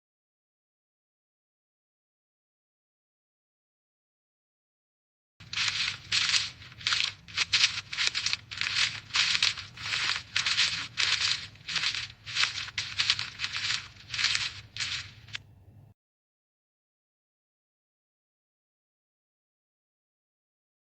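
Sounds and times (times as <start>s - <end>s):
footsteps crunching dry leaves: 5.4s - 15.4s.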